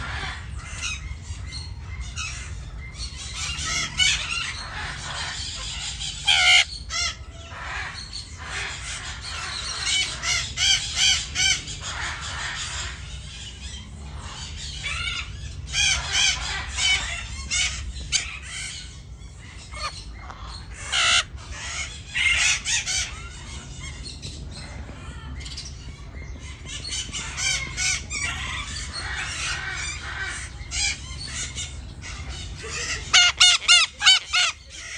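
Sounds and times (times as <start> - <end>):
parrots squawking: 0.0 - 24.0, 26.8 - 34.9.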